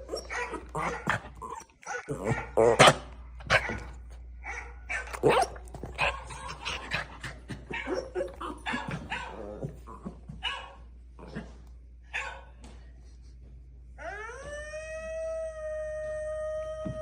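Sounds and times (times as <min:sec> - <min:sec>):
dog yipping whining and barking: 0:00.0 - 0:01.1, 0:07.7 - 0:09.4.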